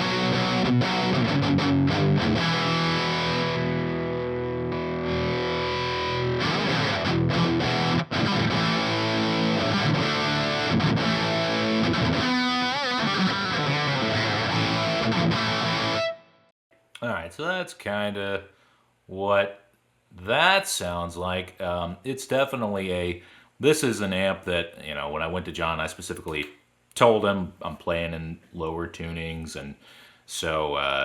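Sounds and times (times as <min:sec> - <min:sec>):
distorted electric guitar riffing: 0:00.0 - 0:16.2.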